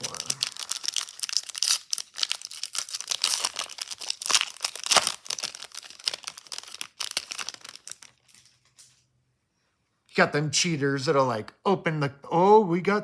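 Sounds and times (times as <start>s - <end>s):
wrapper tearing and crinkling: 0.0s - 9.0s.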